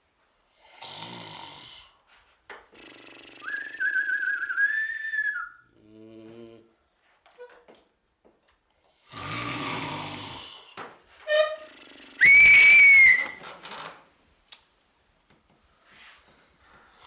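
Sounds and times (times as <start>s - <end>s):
man snoring: 0.7s - 2.0s, 9.1s - 10.6s
loud held whistle: 3.4s - 5.6s, 12.2s - 13.4s.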